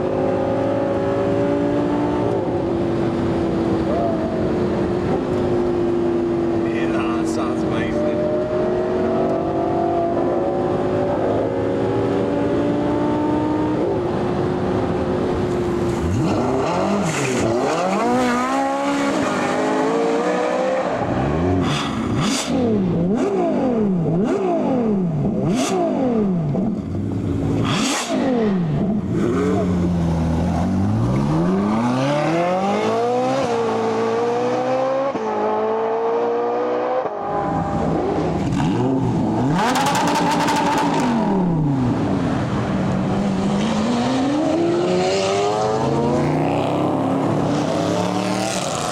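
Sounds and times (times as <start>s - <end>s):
supercar engine revving: 15.2s - 48.9s.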